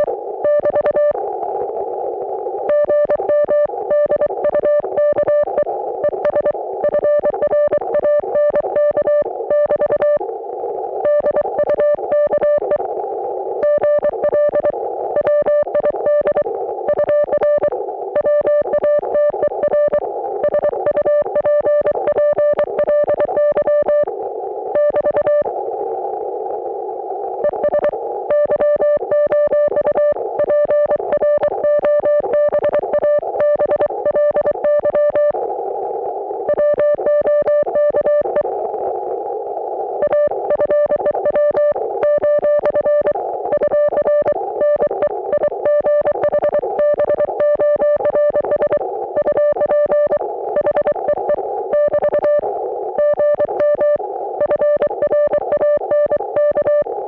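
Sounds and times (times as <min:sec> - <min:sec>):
morse code beep: 0:00.0 - 0:01.2, 0:02.7 - 0:10.2, 0:11.0 - 0:12.8, 0:13.6 - 0:24.1, 0:24.7 - 0:25.5, 0:27.4 - 0:35.4, 0:36.5 - 0:38.5, 0:40.0 - 0:52.4, 0:53.0 - 0:56.9.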